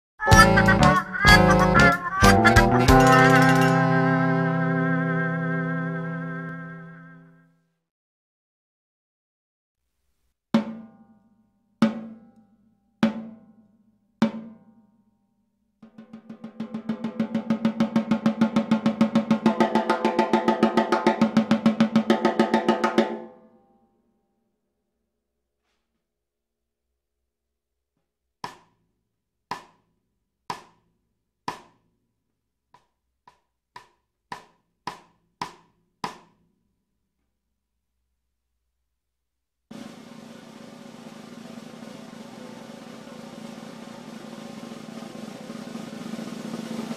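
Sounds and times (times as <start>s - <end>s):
snare drum roll: 15.9s - 23.2s, 39.7s - 46.9s
snare drum hits: 39.7s - 46.9s.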